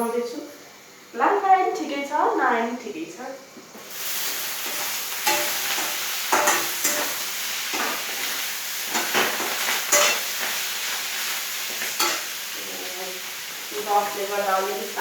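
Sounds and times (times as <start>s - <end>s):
greens sizzling in a pan: 3.7s - 15.0s
spatula scraping a pan: 4.3s - 10.4s, 11.8s - 12.3s.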